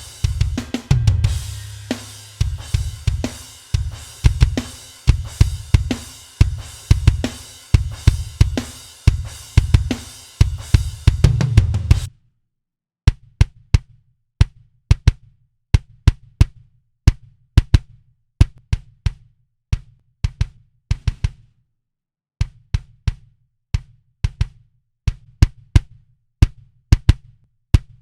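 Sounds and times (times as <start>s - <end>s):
drum kit groove: 0.0s - 12.1s.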